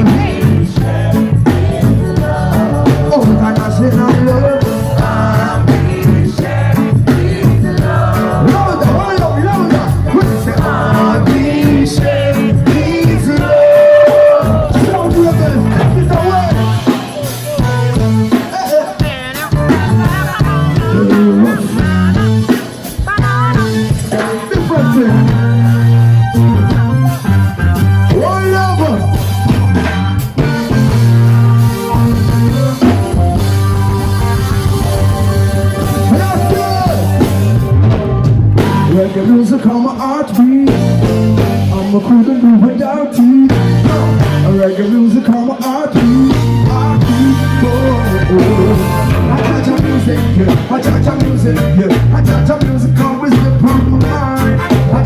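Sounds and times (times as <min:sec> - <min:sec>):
person singing wordless vocals: 0:00.0 - 0:25.7, 0:38.8 - 0:55.0
heavy bass line: 0:00.0 - 0:55.0
live reggae band playing: 0:00.0 - 0:55.0.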